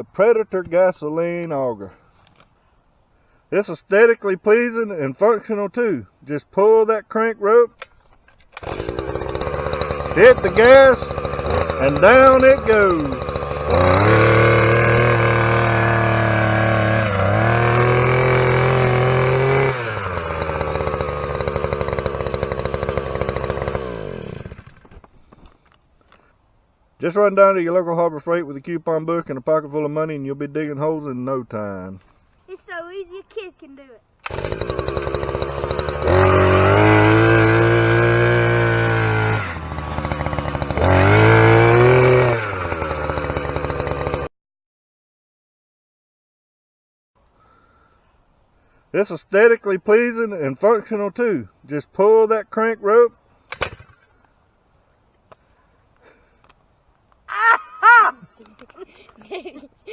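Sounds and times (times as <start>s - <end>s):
post hole auger engine running: 8.3s - 25.1s, 34.2s - 44.3s.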